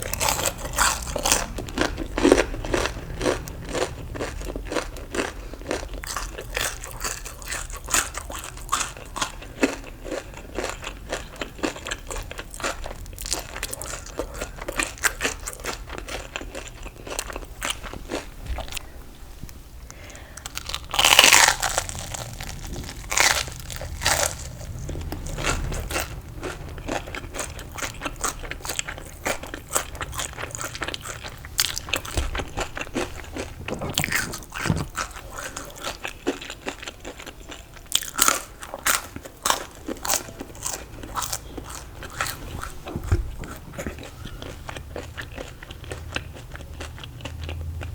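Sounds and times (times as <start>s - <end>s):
crunching crisp food: 0.0s - 18.9s, 19.9s - 47.9s.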